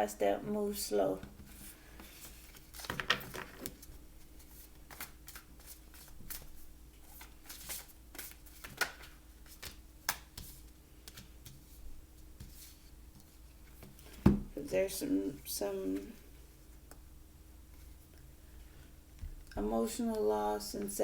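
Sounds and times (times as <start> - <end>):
cards shuffling: 1.6 - 11.6.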